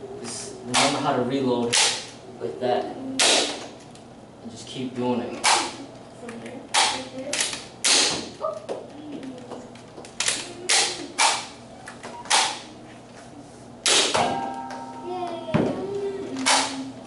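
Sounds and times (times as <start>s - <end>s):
toy blaster spring pops: 6.8s - 8.3s, 10.2s - 11.5s, 12.3s - 12.6s.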